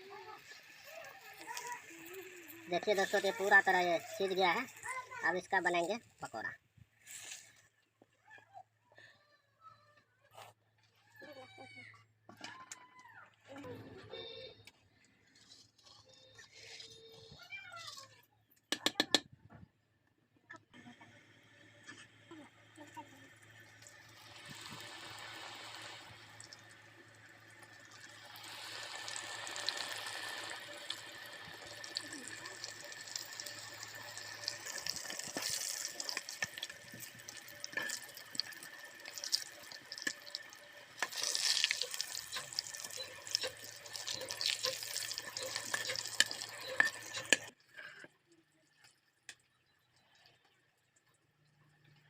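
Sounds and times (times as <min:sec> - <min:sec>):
pakoras sizzling in hot oil: 0:00.0 - 0:07.8, 0:14.2 - 0:16.9, 0:20.9 - 0:51.4.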